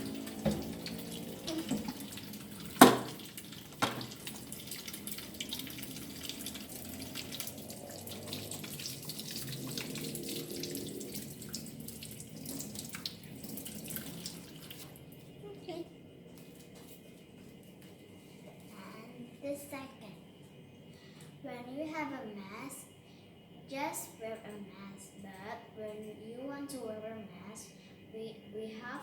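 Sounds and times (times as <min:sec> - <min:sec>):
tap running into a sink: 0:00.0 - 0:06.6.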